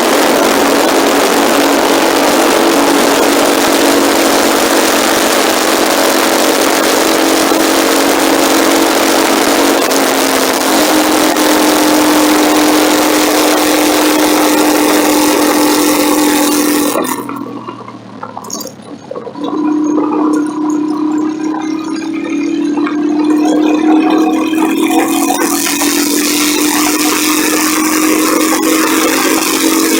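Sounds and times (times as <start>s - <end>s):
wind rush on microphone: 0.0s - 17.7s
motorcycle engine running: 0.0s - 29.9s.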